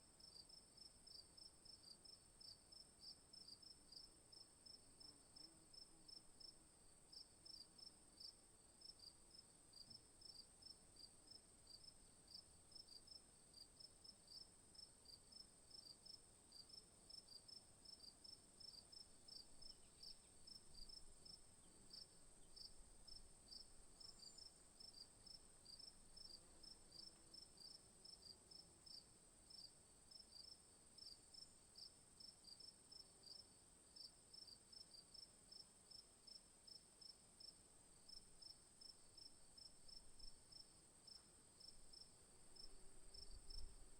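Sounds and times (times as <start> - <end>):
insect chirps: 0.2 - 43.9.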